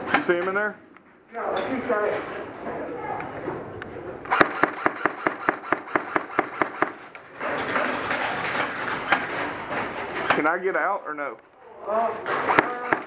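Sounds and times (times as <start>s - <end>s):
airsoft gun shots: 4.3s - 7.1s, 12.3s - 13.0s.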